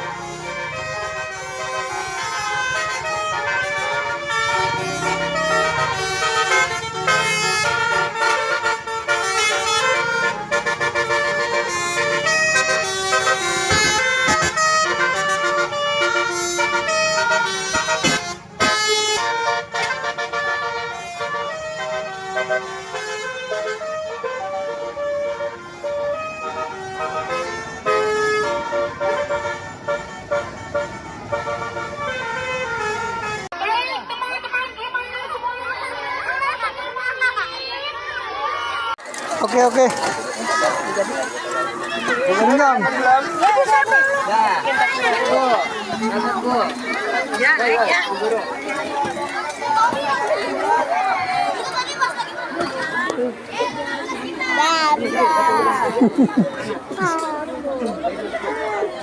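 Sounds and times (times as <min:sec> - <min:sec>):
musical bus air horn melody: 0:00.0 - 0:33.6.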